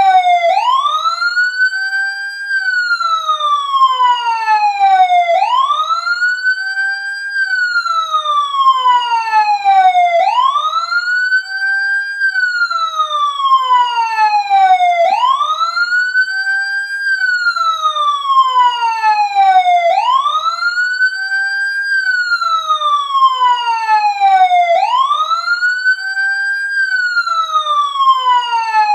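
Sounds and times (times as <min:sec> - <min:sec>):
wailing siren ringtone: 0:00.0 - 0:28.9.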